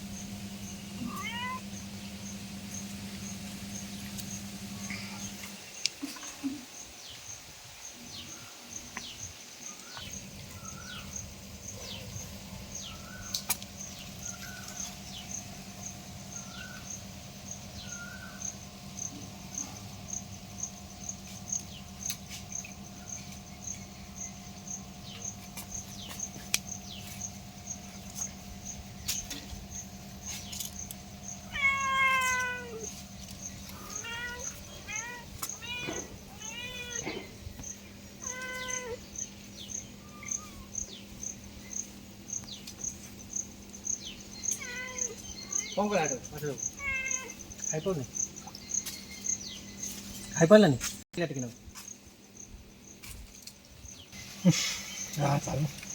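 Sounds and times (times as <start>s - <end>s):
steady low hum: 0.0s - 51.0s
cat meowing: 1.0s - 1.6s, 31.5s - 32.9s, 33.8s - 37.3s, 38.2s - 39.0s, 44.5s - 45.6s, 46.7s - 47.4s.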